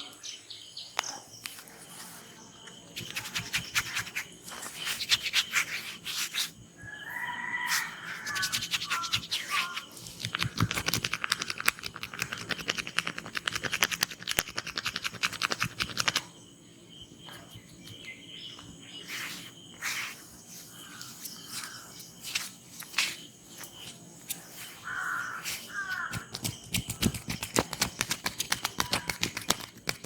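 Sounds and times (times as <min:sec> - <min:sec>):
rapid rhythmic hand taps: 0:10.2 - 0:16.3, 0:26.1 - 0:30.0
birds calling: 0:23.0 - 0:27.5.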